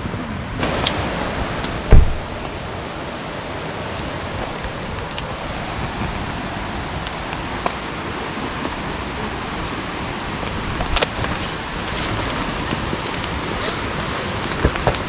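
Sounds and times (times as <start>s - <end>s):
rain hissing: 1.2s - 15.0s
loud low thump: 1.9s - 2.3s.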